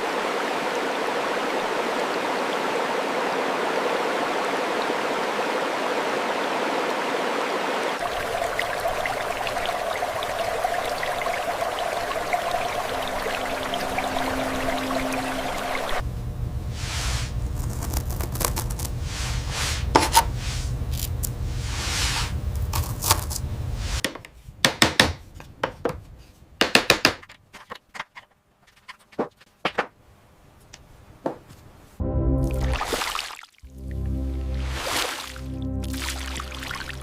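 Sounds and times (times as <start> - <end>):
steady low hum: 8.0 - 24.0
rubbing and scraping strokes: 16.8 - 20.7, 21.6 - 22.4.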